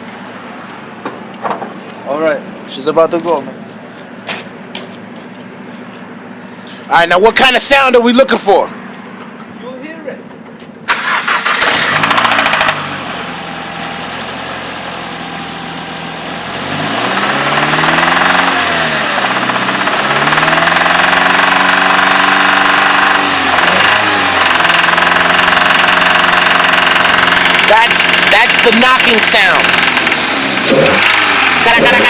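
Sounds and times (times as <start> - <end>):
car engine idling and revving: 0.0 - 32.0
engine cranking: 10.8 - 12.9, 17.2 - 32.0
engine knocking: 12.0 - 12.8, 19.2 - 31.8.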